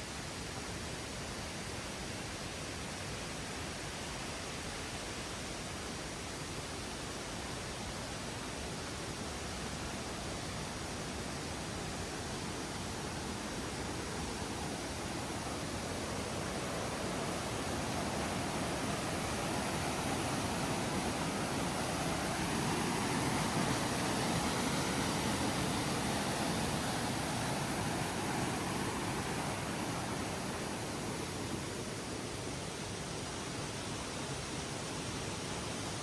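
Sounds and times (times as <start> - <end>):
rushing water: 0.0 - 36.0.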